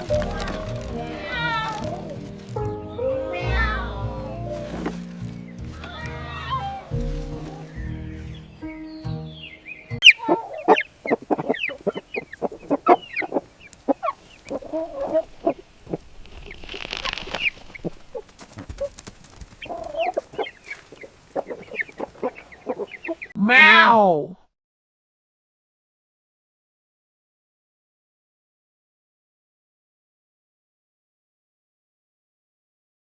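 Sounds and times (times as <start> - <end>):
chickens clucking: 10.0 - 23.4
brief rustle: 16.0 - 19.9.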